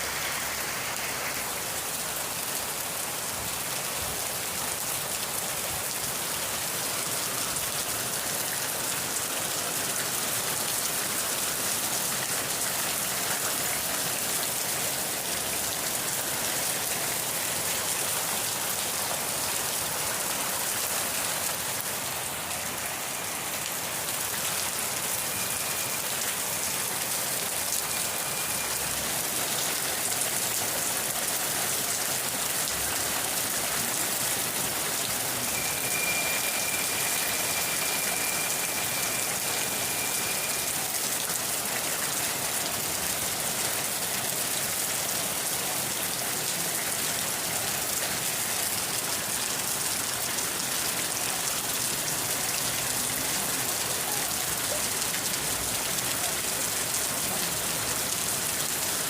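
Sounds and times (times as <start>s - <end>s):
steady rain falling: 0.0s - 59.0s
faint high steady tone: 35.4s - 40.8s.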